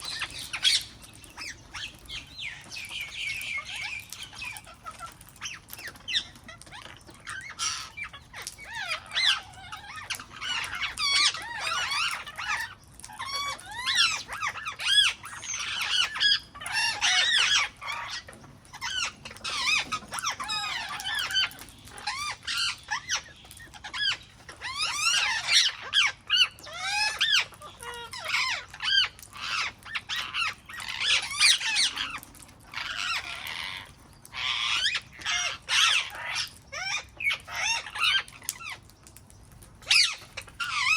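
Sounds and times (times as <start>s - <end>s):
parrots squawking: 0.0s - 38.9s, 39.8s - 40.9s.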